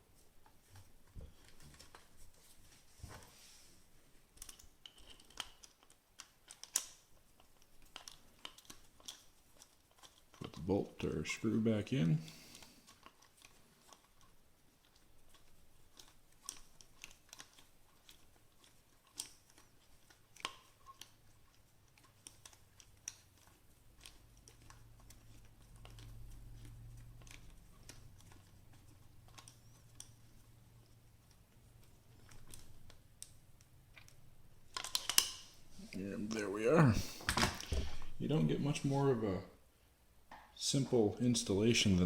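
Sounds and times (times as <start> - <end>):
hex key clicking on screw: 4.4 - 10.3.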